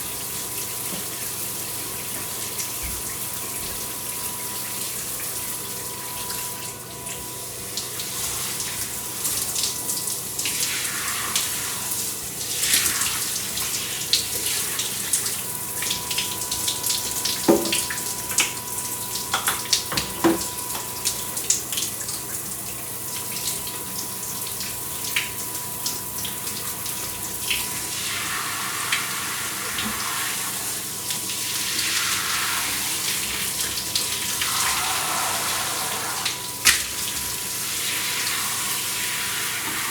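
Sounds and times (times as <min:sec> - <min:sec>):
shower spray hissing: 0:28.0 - 0:39.9.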